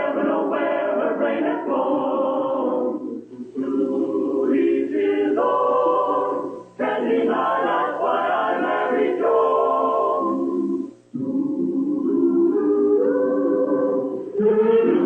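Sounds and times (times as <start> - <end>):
choir singing: 0.0 - 15.0.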